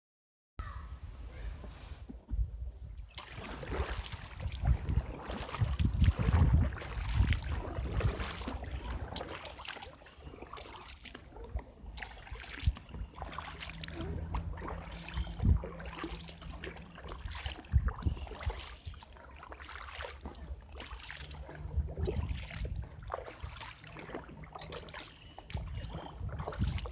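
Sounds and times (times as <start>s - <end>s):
paddle strokes in water: 1.7s - 26.9s
low steady hum: 2.8s - 26.9s
low rumbling: 11.5s - 19.1s, 20.4s - 26.9s.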